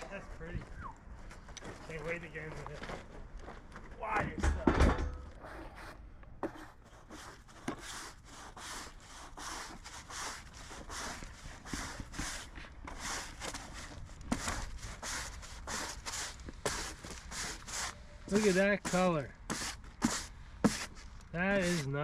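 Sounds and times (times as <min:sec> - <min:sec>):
brush strokes on log: 0:05.5 - 0:22.0.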